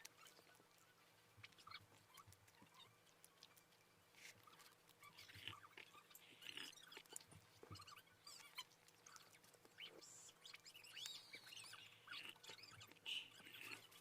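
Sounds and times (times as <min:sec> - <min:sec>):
soft chewing: 0:00.0 - 0:14.0
squeaky mouth noises: 0:00.0 - 0:14.0.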